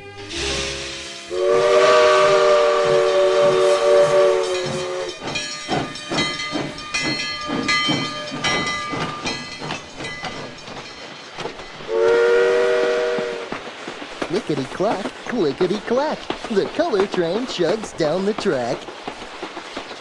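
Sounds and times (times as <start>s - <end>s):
steam whistle blowing: 0.4s - 5.2s, 11.9s - 13.5s
steam engine chugging and clanking: 0.4s - 20.0s.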